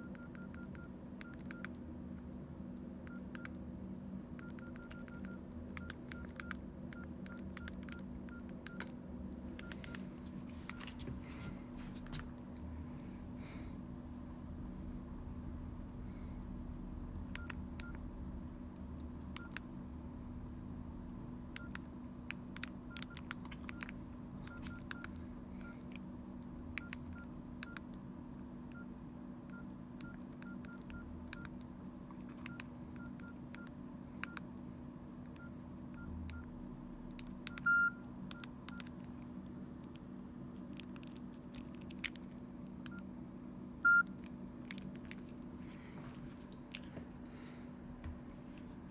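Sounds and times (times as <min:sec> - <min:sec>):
phone keypad beeps: 0:00.0 - 0:01.8, 0:03.1 - 0:03.6, 0:04.4 - 0:08.9, 0:09.5 - 0:10.1, 0:17.4 - 0:18.0, 0:19.4 - 0:19.6, 0:21.6 - 0:21.8, 0:22.9 - 0:25.2, 0:26.8 - 0:27.8, 0:28.7 - 0:31.6, 0:32.3 - 0:34.4, 0:37.4 - 0:39.0, 0:43.8 - 0:44.2
low steady hum: 0:00.0 - 0:48.9.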